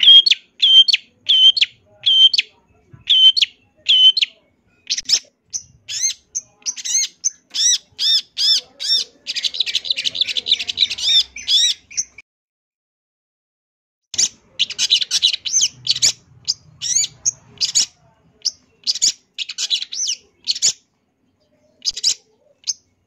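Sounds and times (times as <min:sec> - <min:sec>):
shrike singing: 0:00.0 - 0:12.2.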